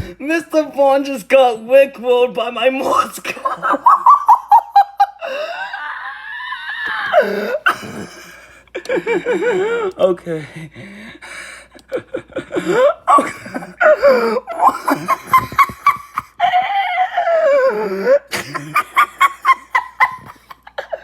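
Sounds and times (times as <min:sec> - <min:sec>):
person laughing in shrieks: 0:03.4 - 0:08.2, 0:11.9 - 0:21.0.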